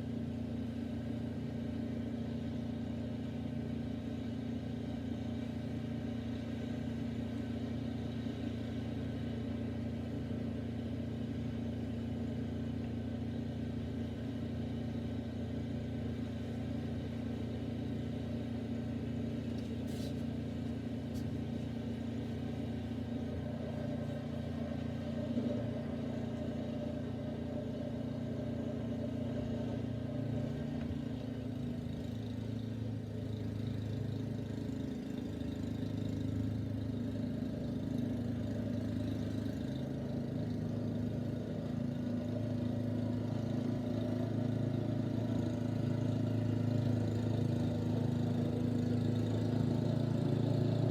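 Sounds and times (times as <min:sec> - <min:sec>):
engine running steadily: 0:00.0 - 0:50.9.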